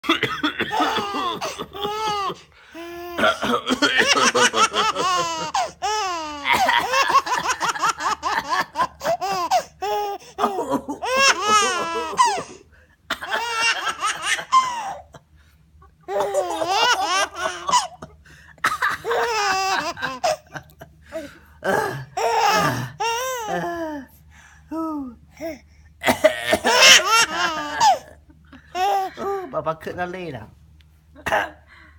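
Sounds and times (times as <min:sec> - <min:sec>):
man coughing: 0:00.0 - 0:05.8, 0:06.5 - 0:07.8, 0:10.4 - 0:15.3, 0:16.1 - 0:24.0, 0:26.0 - 0:28.2, 0:31.2 - 0:31.7
baby laughing: 0:00.6 - 0:15.2, 0:16.1 - 0:18.2, 0:18.8 - 0:20.8, 0:22.2 - 0:23.9, 0:26.4 - 0:29.4.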